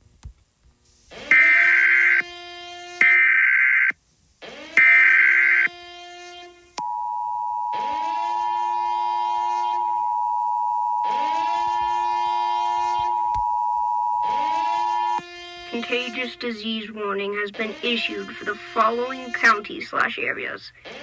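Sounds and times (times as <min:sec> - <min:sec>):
screeching digital data tones: 0:03.0 - 0:03.9, 0:04.8 - 0:05.8, 0:07.1 - 0:19.7
high two-tone attention signal: 0:06.8 - 0:15.2.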